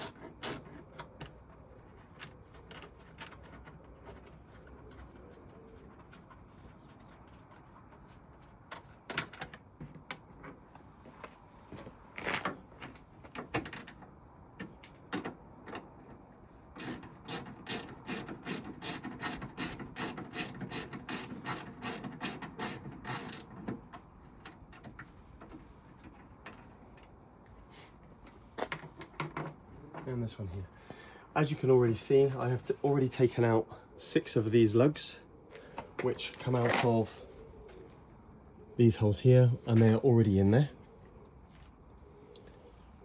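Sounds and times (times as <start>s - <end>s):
ratchet spanner clicking: 16.8s - 23.5s.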